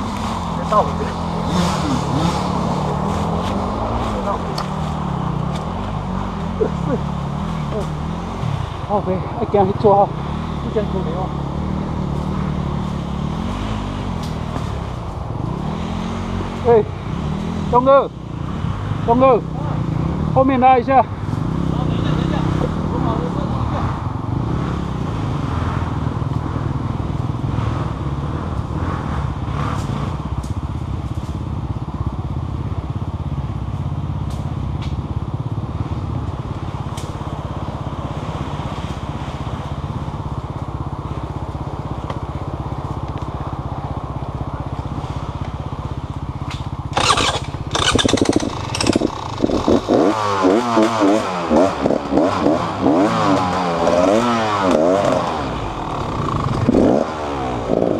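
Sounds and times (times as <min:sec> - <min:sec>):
engine revving: 0:00.0 - 0:31.4, 0:46.5 - 0:57.9.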